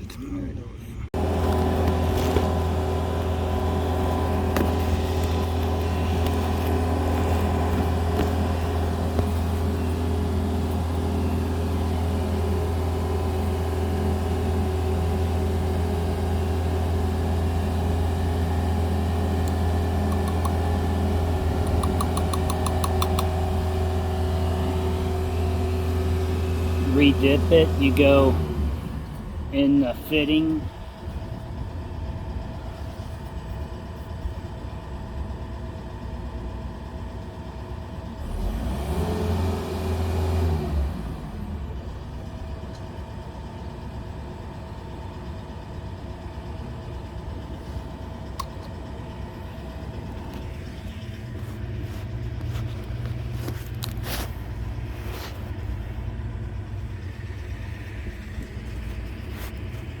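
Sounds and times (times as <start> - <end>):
engine hum: 0.0 - 60.0
sharp clicks: 19.4 - 20.6, 21.6 - 23.3.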